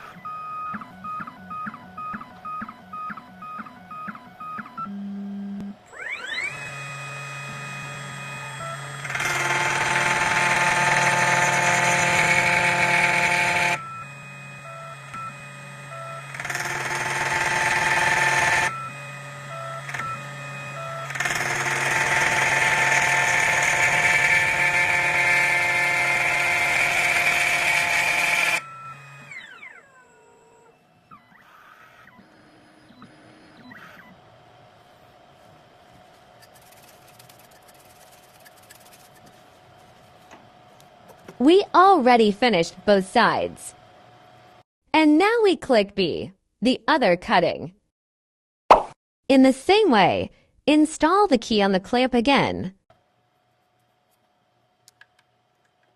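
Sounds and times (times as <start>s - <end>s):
spindle motor whine: 0.0s - 41.5s.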